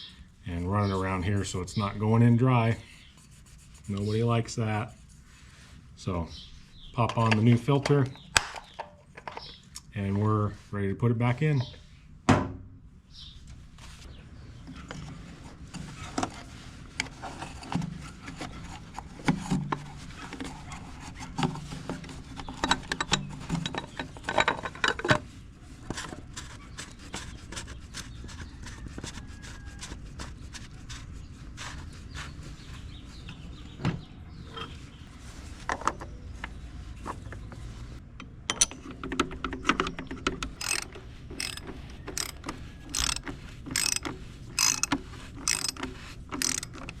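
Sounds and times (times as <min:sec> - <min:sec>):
ratchet clicks: 0:40.3 - 0:47.0
cap scraping and knocking: 0:40.6 - 0:47.0.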